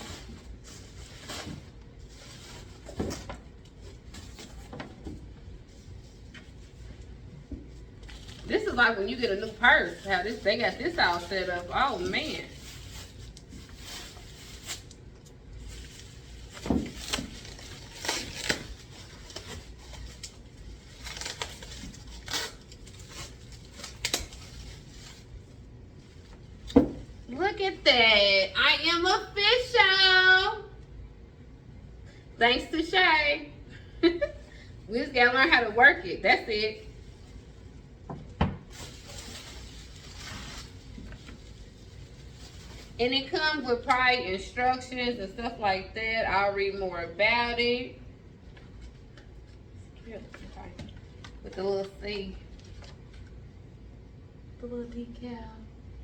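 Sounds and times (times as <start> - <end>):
packaging rustling and crinkling: 0.0 - 7.0, 7.7 - 26.7, 38.7 - 43.0.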